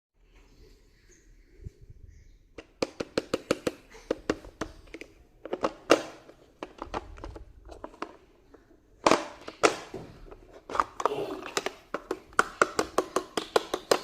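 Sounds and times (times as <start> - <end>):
plastic knocks: 2.6 - 8.2, 9.0 - 14.0
plastic toy parts clicking: 2.6 - 8.2, 10.7 - 14.0.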